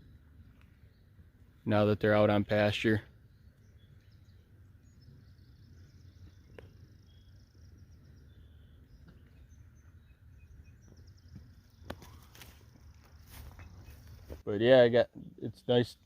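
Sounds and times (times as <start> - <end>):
low steady rumble: 0.0 - 11.8
faint bird chirps: 3.1 - 14.4.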